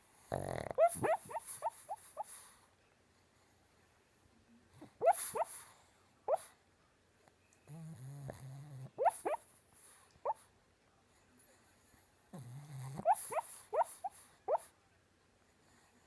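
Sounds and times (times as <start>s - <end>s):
dog snoring with squeaky whistles: 7.7s - 9.4s, 12.4s - 13.9s.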